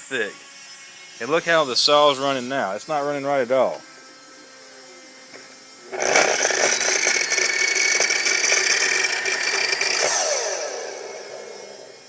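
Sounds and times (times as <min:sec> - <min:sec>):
miter saw motor whining: 0:00.0 - 0:12.0
person speaking: 0:01.2 - 0:04.0.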